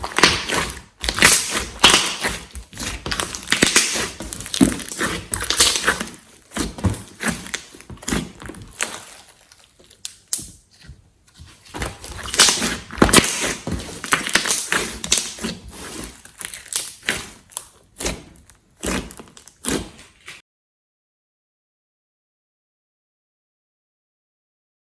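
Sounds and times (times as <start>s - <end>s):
hands squeezing sticky slime: 0.0s - 10.6s, 11.8s - 20.1s.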